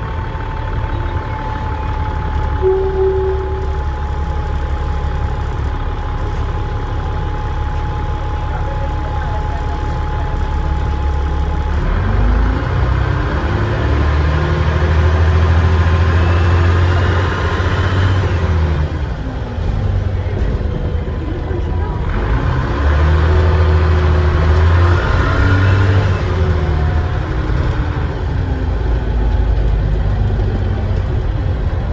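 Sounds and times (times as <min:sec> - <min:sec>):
bus engine: 0:00.0 - 0:31.9
turbo whistle: 0:02.4 - 0:05.1.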